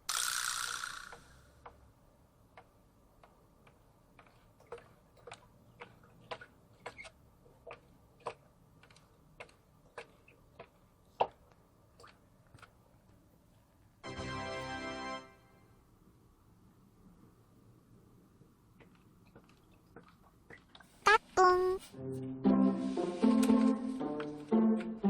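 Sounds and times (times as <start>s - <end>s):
cat pawing at water: 3.2s - 13.2s.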